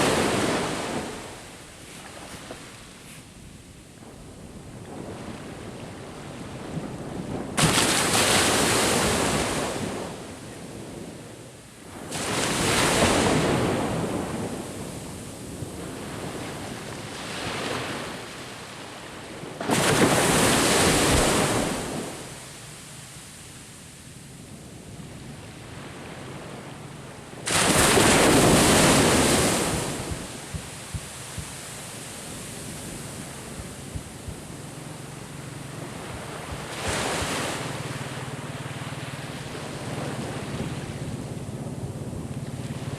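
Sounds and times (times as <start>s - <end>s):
waves crashing on beach: 0.0s - 42.9s
steady wash of water: 27.4s - 34.7s.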